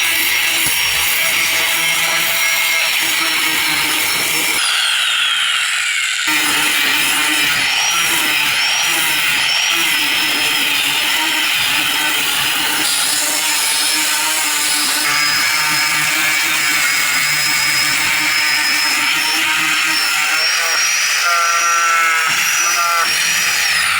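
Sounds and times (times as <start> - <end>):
power tool sanding whine: 0.0 - 23.9.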